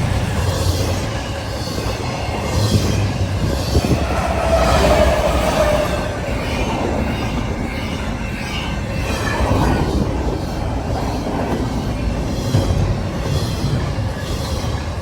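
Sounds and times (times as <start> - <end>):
train wheels rumbling on rails: 0.0 - 15.0
metallic squeal: 3.6 - 8.0.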